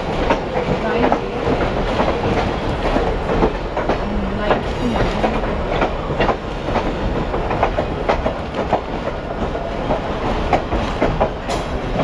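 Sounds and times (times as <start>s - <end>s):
train rumbling on rails: 0.0s - 12.0s
wheels clacking over rail joints: 0.0s - 12.0s.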